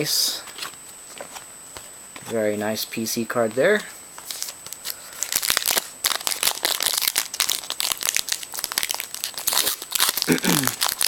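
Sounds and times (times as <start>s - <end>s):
wrapper crinkling and tearing: 4.3s - 11.0s.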